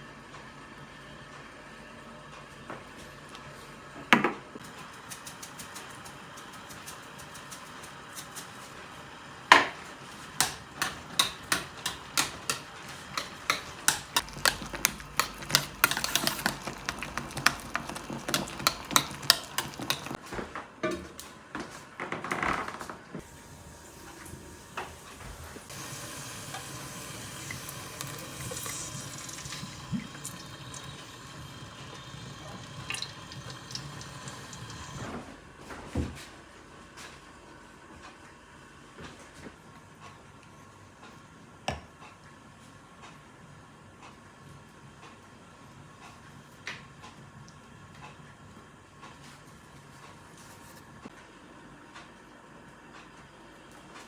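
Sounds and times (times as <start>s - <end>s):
utensils knocking and clinking: 10.4s - 20.2s.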